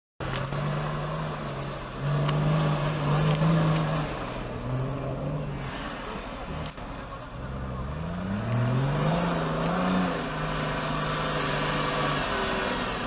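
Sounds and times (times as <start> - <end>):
vehicle engine revving under load: 0.2 - 13.0.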